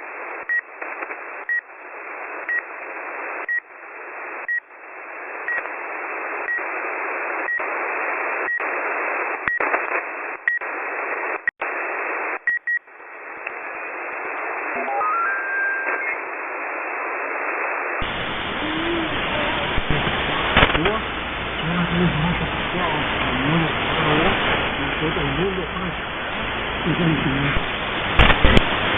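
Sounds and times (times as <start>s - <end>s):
radio static hiss: 0.0s - 28.9s
tone stepping up in pitch: 14.7s - 16.2s.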